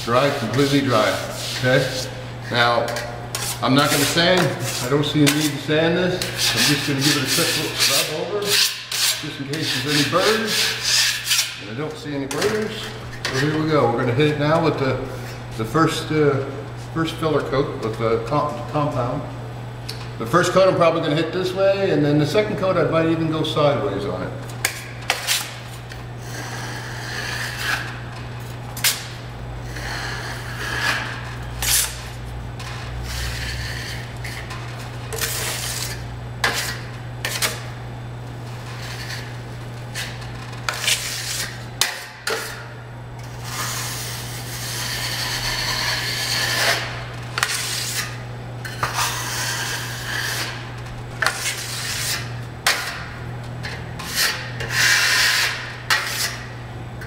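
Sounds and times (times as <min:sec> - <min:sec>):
steady low hum: 0:00.0 - 0:57.0
drywall knife scraping: 0:00.1 - 0:02.2, 0:02.9 - 0:11.6, 0:26.2 - 0:28.0, 0:28.8 - 0:32.1, 0:33.0 - 0:37.7, 0:38.7 - 0:42.7, 0:43.3 - 0:56.5.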